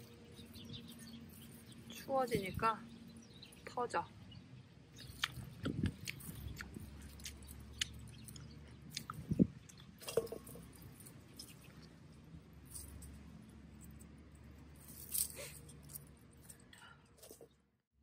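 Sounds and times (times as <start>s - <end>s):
tomato stems snapping: 5.0s - 11.8s.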